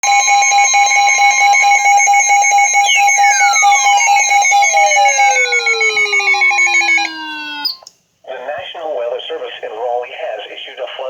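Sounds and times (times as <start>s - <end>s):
tone sliding down in pitch: 0.0s - 7.8s
rapidly pulsing high tones: 0.0s - 7.9s
steady high alarm tone: 0.0s - 7.9s.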